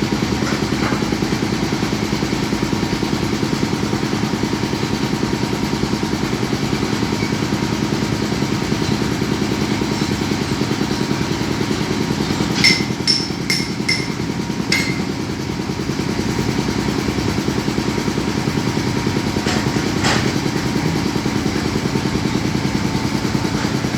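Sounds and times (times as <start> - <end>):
diesel engine running: 0.0 - 23.9
sharp metallic clanks: 12.3 - 15.3.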